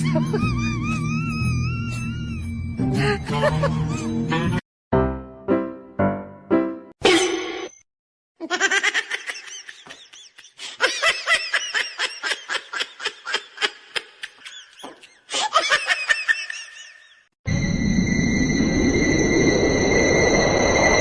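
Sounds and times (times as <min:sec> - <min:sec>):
person laughing hard: 0:00.0 - 0:01.2, 0:03.0 - 0:04.6, 0:08.4 - 0:17.2.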